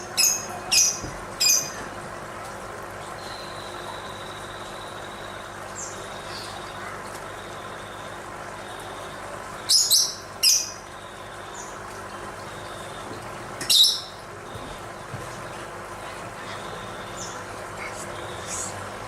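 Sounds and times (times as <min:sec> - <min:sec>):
steady background noise: 0:00.0 - 0:19.0
thin steady high tone: 0:03.0 - 0:19.0
faint bird chirps: 0:03.2 - 0:11.8.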